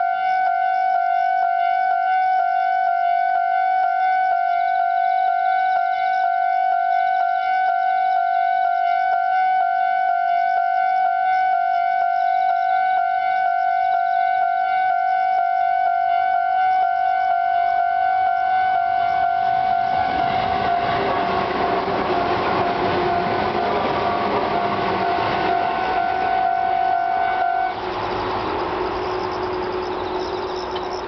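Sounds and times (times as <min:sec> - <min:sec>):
train running noise: 0:11.4 - 0:31.0.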